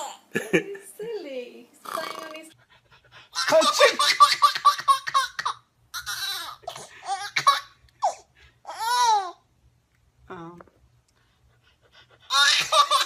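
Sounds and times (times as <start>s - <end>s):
baby giggling: 3.4s - 9.4s, 12.3s - 13.0s.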